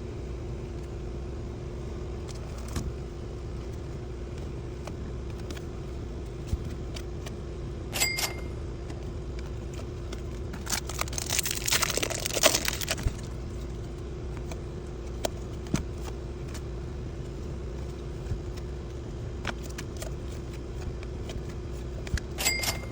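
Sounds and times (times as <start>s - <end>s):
steady low hum: 0.0s - 22.9s
card pack rustling and crinkling: 9.5s - 22.4s.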